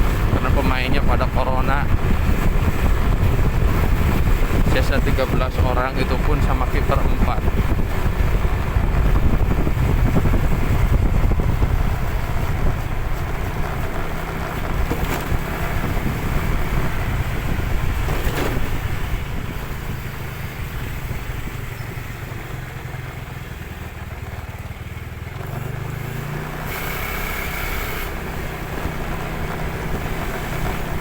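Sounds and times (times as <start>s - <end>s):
wind buffeting microphone: 0.0s - 22.2s
vehicle rumble: 0.0s - 31.0s.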